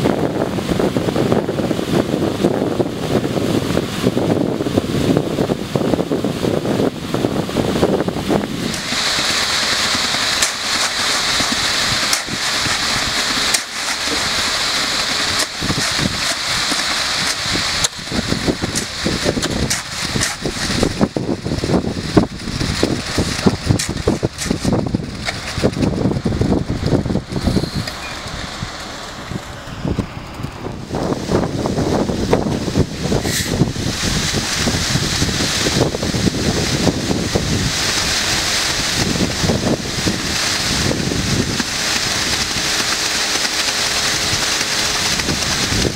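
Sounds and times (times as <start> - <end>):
concrete mixer truck running: 0.0 - 45.9
wind buffeting microphone: 0.0 - 45.9.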